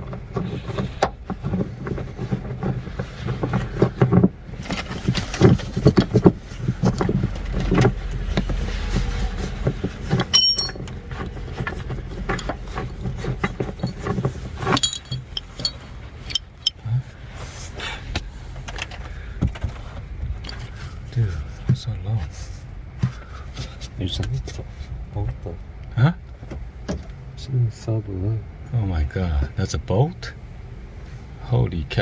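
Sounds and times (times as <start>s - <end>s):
metallic clinks: 10.3s - 10.9s, 14.7s - 16.8s.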